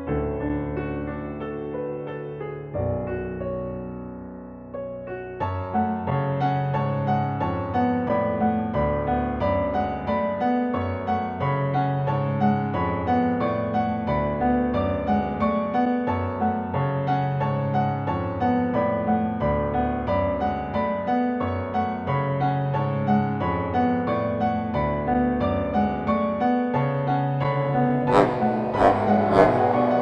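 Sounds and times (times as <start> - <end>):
keyboard notes over bass line: 27.4 - 30.0.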